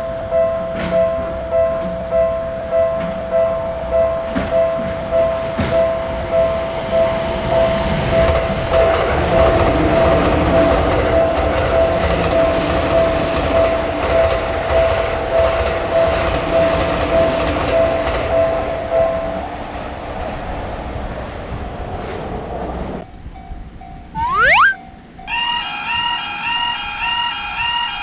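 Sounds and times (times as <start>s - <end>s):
train rumble and wheel clatter: 0.0s - 24.1s.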